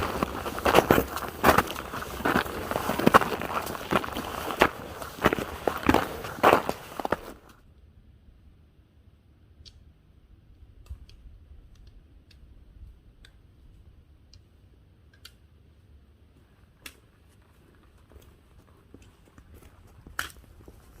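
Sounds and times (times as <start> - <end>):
footsteps crunching on ice: 0.0 - 7.5.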